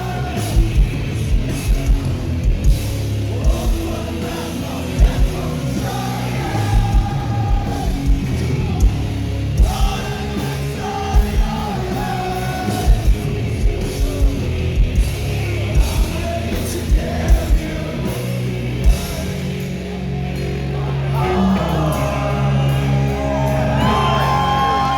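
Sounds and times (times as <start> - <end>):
hard low drum beats: 0.0 - 20.0
live rock band playing: 0.0 - 24.9
sung and yelled vocals: 0.0 - 24.9.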